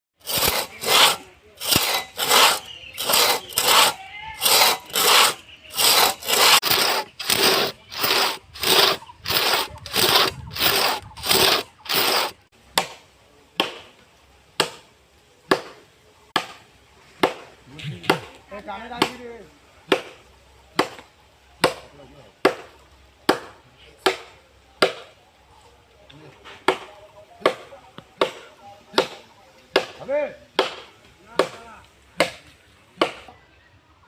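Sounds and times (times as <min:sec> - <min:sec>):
saw cutting through wood: 0:00.2 - 0:12.5.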